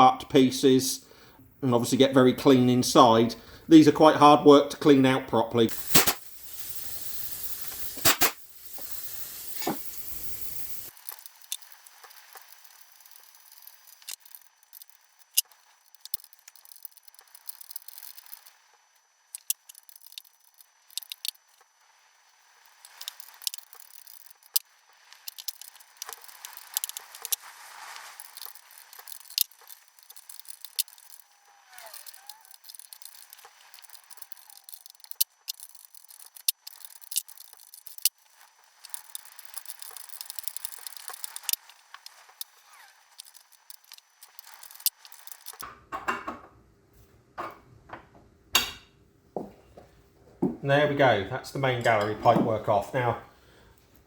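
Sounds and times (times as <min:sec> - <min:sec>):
steady hiss: 0:00.0 - 0:45.6
spanner clicking on metal fittings: 0:05.7 - 0:11.6.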